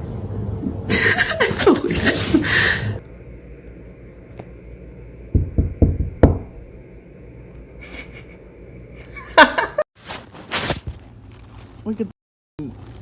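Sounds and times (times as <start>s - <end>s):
dull knocks: 5.3s - 6.6s.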